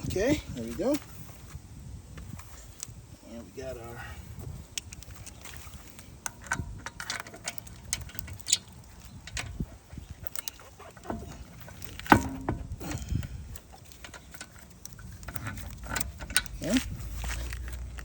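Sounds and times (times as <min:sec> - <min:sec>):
metallic clicks and knocks: 0:06.2 - 0:09.6, 0:10.2 - 0:12.8, 0:13.5 - 0:18.0.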